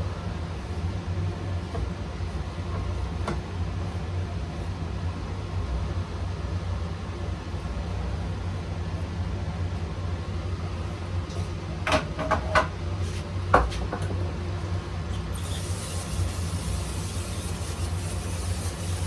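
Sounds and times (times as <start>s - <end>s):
steady low hum: 0.0s - 11.8s.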